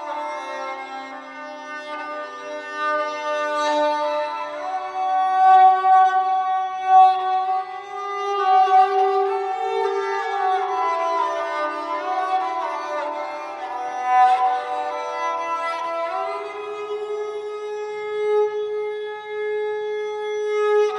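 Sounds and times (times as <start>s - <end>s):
bowed string instrument melody: 0.0s - 20.9s.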